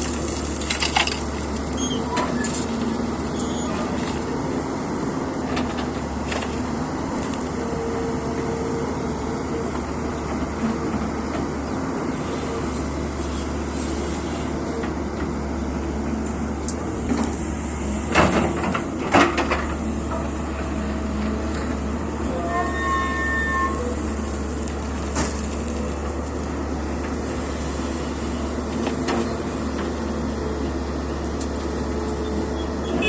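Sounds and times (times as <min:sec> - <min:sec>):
excavator diesel engine droning: 0:00.0 - 0:33.0.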